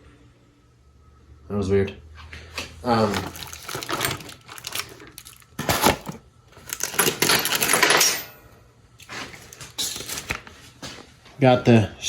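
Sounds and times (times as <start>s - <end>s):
small metal objects clinking: 3.0s - 8.3s.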